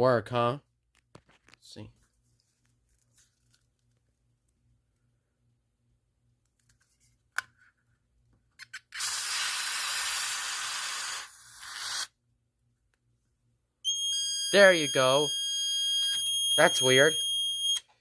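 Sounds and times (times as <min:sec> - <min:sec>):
aerosol can hissing: 0:09.0 - 0:12.1
smoke alarm sounding: 0:13.8 - 0:17.9.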